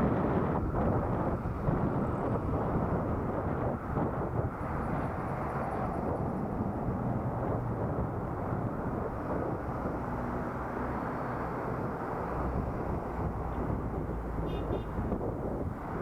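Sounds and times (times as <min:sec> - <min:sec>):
road rumble: 0:00.0 - 0:16.0
vehicle engine hum: 0:00.0 - 0:16.0
wind noise: 0:00.0 - 0:16.0.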